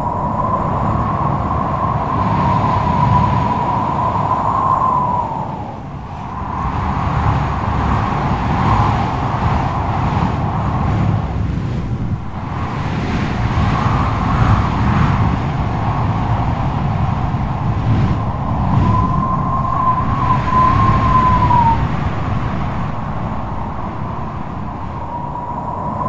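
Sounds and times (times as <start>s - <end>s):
strong gusting wind: 0.0s - 26.0s
faint whistle: 18.8s - 21.9s.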